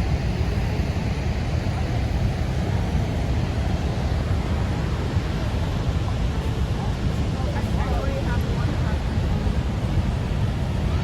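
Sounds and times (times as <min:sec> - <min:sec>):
waterfall roaring: 0:00.0 - 0:11.0.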